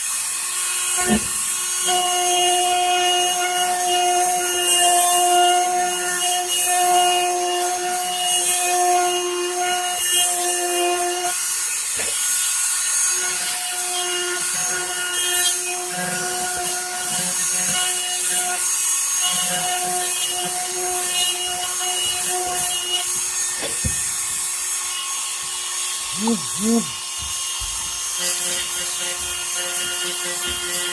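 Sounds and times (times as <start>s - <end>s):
rotary tool motor whine: 0.1s - 30.9s
bit grinding wood: 26.0s - 30.9s.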